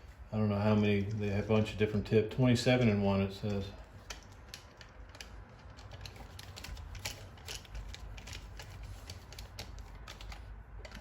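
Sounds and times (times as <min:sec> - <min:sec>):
low steady hum: 0:00.0 - 0:11.0
tools and wire clicking: 0:03.4 - 0:11.0.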